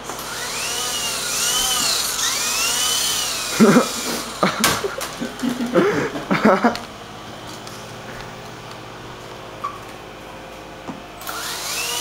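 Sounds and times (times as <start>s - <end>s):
toy helicopter motor whining: 0.0s - 6.0s, 11.2s - 12.0s.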